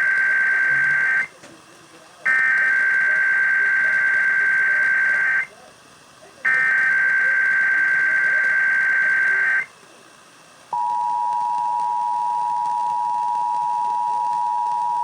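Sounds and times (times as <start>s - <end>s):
harsh digital data tones: 0.0s - 1.3s, 2.3s - 5.5s, 6.5s - 9.7s
two-tone alarm: 0.0s - 1.3s, 2.3s - 5.5s, 6.5s - 9.7s, 10.8s - 15.0s.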